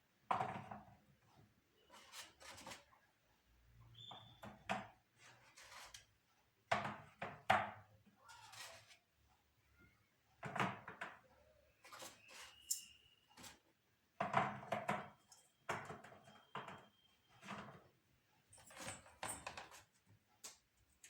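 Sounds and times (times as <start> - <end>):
household items knocking and clattering: 0.3 - 1.0, 6.7 - 7.9, 10.4 - 11.2, 14.2 - 17.9.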